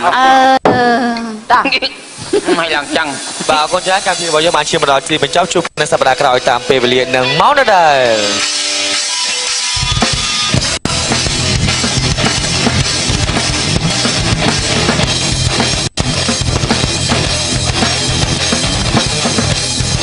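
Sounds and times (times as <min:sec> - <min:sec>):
closing music with drum beat: 0:08.1 - 0:20.0.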